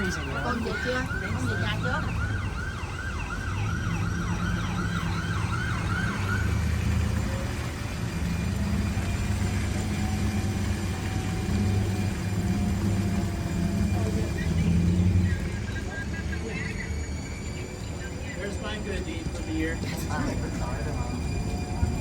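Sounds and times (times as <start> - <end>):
siren yelping: 0.0 - 22.0
vehicle engine and traffic rumble: 0.0 - 22.0.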